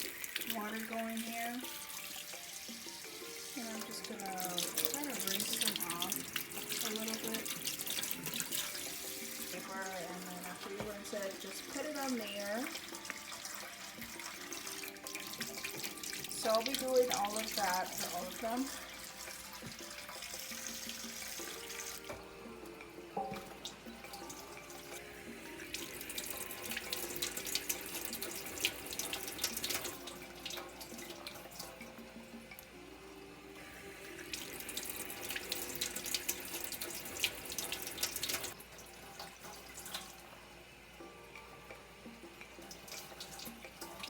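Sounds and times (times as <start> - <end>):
tap water running: 0.0 - 44.0.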